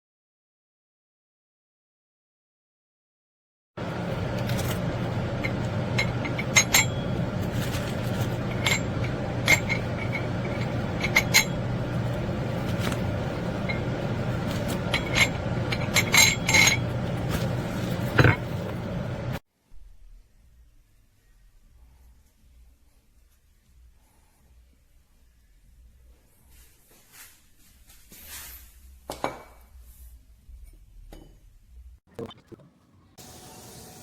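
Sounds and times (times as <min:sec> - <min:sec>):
steady low hum: 0:03.8 - 0:19.4
metal weight plates clinking: 0:04.4 - 0:18.8.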